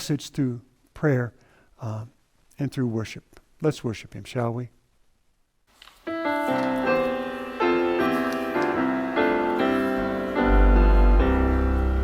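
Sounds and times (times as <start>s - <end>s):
piano chords: 6.1s - 12.0s
deep bass note: 10.4s - 12.0s.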